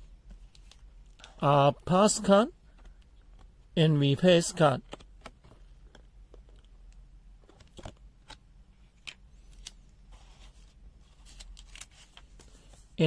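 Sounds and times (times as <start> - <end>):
steady low hum: 0.0 - 13.0
paper and small items rustling: 9.0 - 13.0.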